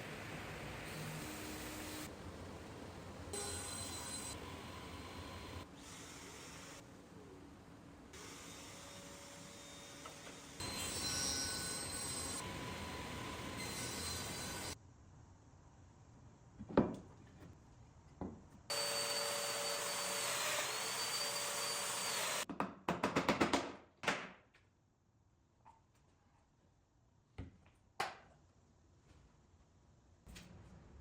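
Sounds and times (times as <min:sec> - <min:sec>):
power tool motor whine: 0:18.7 - 0:22.4.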